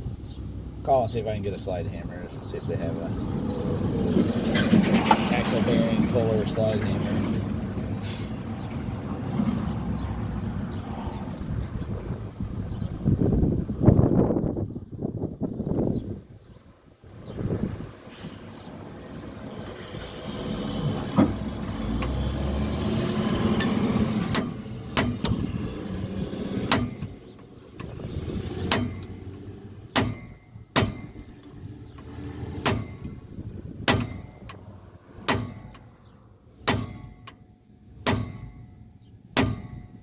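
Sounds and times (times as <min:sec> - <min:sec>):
hammer striking metal: 0:29.9 - 0:31.2, 0:36.6 - 0:37.4, 0:38.0 - 0:38.8, 0:39.4 - 0:40.0.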